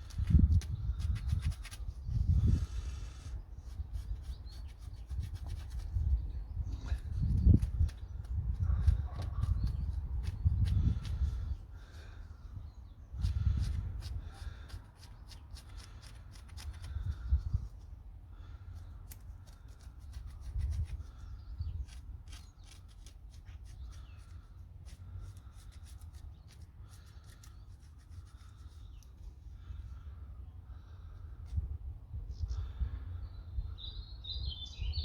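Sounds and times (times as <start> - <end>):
knife scraping wood: 13.2 - 17.1, 19.0 - 29.1.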